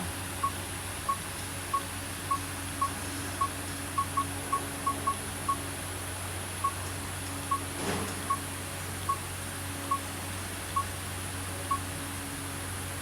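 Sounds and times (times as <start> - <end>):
steady low hum: 0.0 - 7.6.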